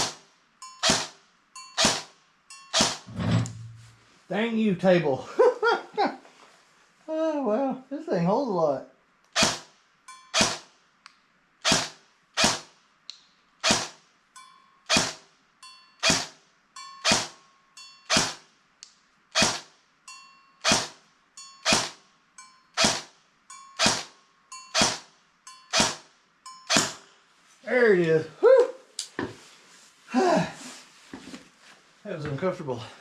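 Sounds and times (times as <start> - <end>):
bb gun shots: 11.7 - 12.7, 19.4 - 19.7, 22.8 - 23.1, 23.8 - 24.1, 25.8 - 26.0, 26.7 - 27.0.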